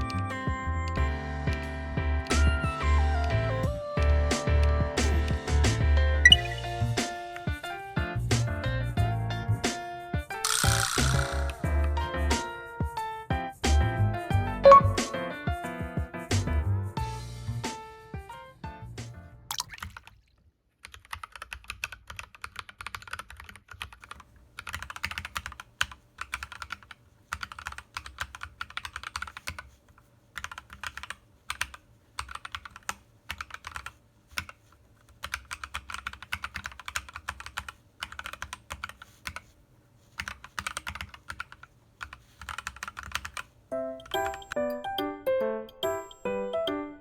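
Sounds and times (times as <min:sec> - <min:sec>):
soft keyboard key clicks: 0:20.9 - 0:39.5, 0:40.1 - 0:44.6.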